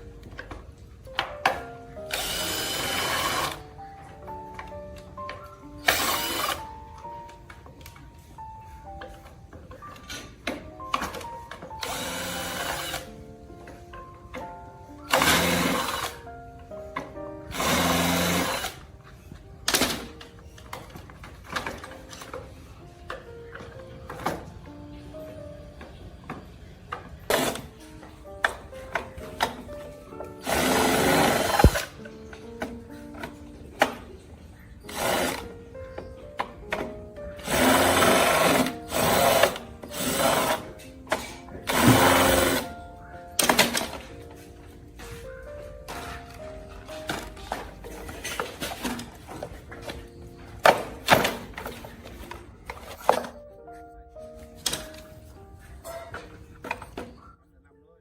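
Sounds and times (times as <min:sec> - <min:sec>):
background music with held notes: 0:00.0 - 0:58.0
small power tool running: 0:02.1 - 0:03.6, 0:05.8 - 0:06.6, 0:11.8 - 0:13.1, 0:15.1 - 0:16.2, 0:17.5 - 0:18.8, 0:30.4 - 0:31.9, 0:37.4 - 0:40.7, 0:41.7 - 0:42.7.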